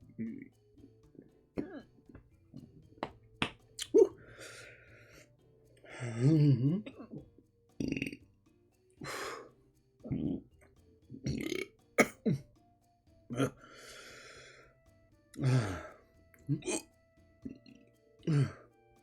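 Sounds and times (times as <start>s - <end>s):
man hiccupping: 7.8s - 8.2s, 11.2s - 12.5s, 15.4s - 16.9s.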